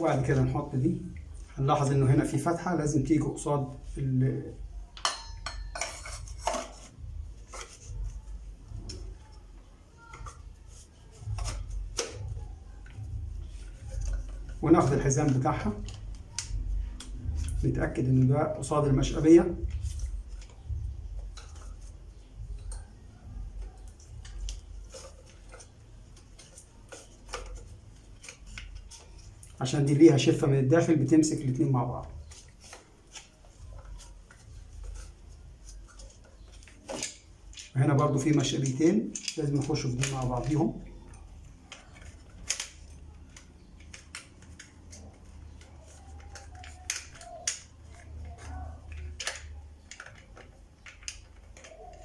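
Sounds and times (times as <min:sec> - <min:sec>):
plastic parts clicking and tapping: 0:19.6 - 0:29.6, 0:32.3 - 0:52.0.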